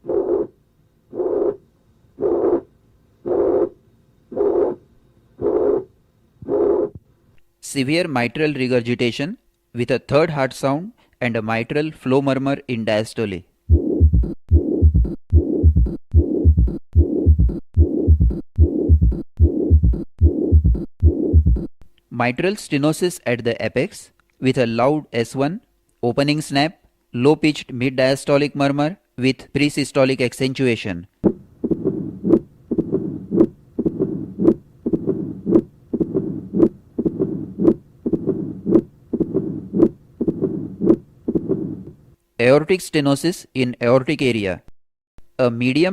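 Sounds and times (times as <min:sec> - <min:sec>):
heart sound thumps: 0:13.7 - 0:21.7, 0:31.2 - 0:41.9
rough heart murmur: 0:13.7 - 0:21.7, 0:31.2 - 0:41.9.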